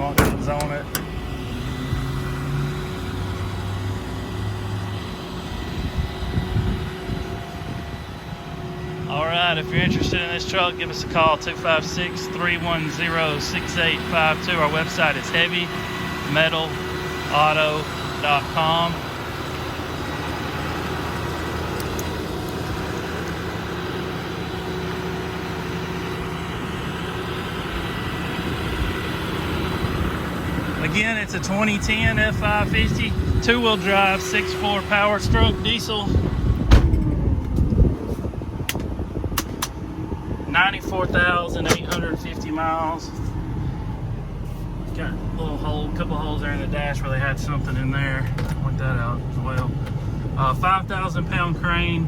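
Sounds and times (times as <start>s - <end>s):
crane mechanical hum: 0.0s - 52.0s
diesel engine idling: 0.0s - 52.0s
steady tone from truck: 0.0s - 52.0s
truck rumble: 0.0s - 52.0s.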